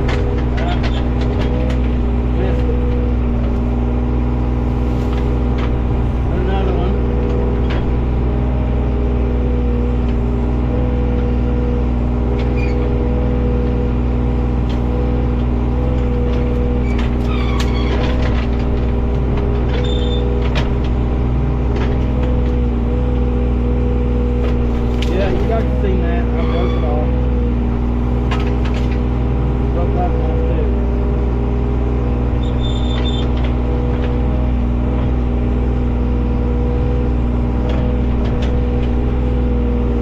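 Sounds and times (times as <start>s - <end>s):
knocks and clanks: 0.0s - 3.7s, 5.0s - 8.2s, 14.6s - 23.3s, 24.4s - 30.3s, 37.6s - 39.4s
excavator diesel engine running: 0.0s - 40.0s.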